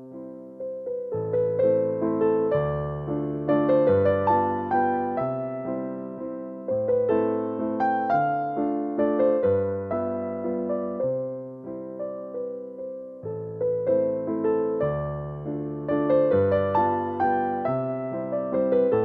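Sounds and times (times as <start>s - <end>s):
slow piano music: 0.0s - 19.0s.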